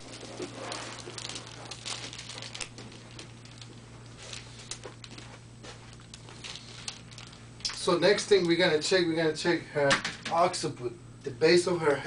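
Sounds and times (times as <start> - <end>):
soft rustling: 0.0 - 7.5
low electrical hum: 0.0 - 12.0.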